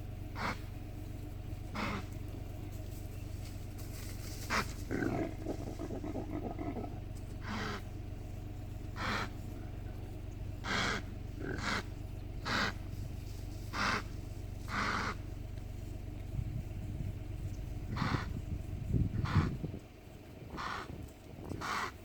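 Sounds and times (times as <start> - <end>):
low steady hum: 0.0 - 22.0
impalas roaring grunts: 1.7 - 2.2, 4.4 - 7.9, 9.0 - 10.0, 10.6 - 12.8, 13.7 - 14.1, 14.7 - 15.2, 17.9 - 18.4, 20.6 - 22.0.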